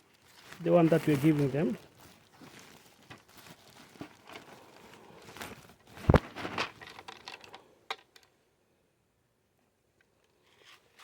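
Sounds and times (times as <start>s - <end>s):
feed sack rustling: 0.0s - 7.1s.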